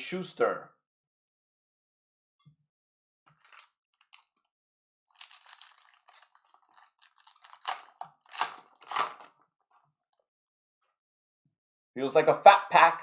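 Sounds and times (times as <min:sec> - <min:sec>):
foil wrapper ripping: 0:03.4 - 0:04.3, 0:05.1 - 0:09.4
foil wrapper crinkling: 0:03.4 - 0:04.4, 0:05.1 - 0:09.4.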